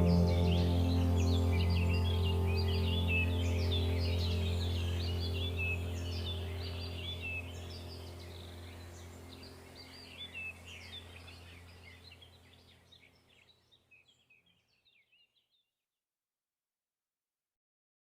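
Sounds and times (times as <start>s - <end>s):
low hum: 0.0s - 12.7s
birds chirping and twittering: 0.0s - 15.7s.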